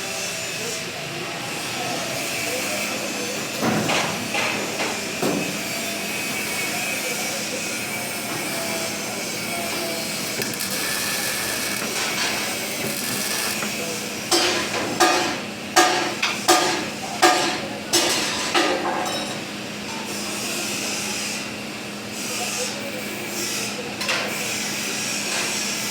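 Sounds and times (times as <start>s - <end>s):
workshop noise: 0.0s - 25.9s.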